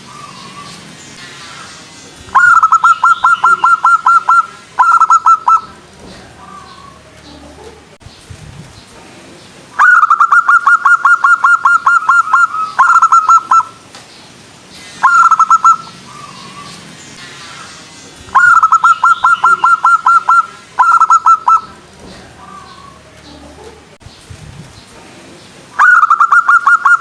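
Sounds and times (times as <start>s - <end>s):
dove calling staccato notes: 0.0s - 7.6s, 9.8s - 13.9s, 14.8s - 23.6s, 25.8s - 27.0s.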